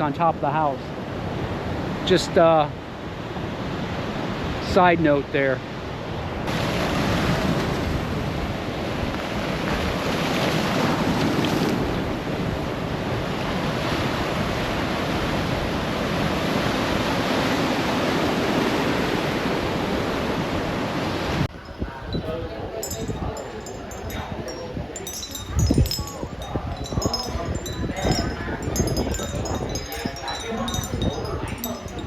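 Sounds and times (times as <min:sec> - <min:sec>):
wind buffeting the microphone: 0:21.5 - 0:32.0.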